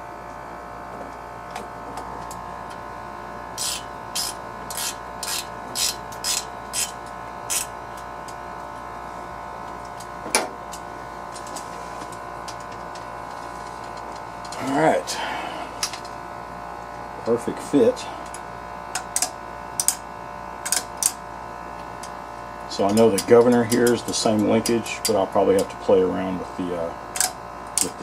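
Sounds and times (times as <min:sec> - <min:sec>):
ratchet wrench ratcheting: 0:03.6 - 0:07.7, 0:18.9 - 0:20.0, 0:20.6 - 0:21.2
sharp metallic click: 0:20.6 - 0:21.2.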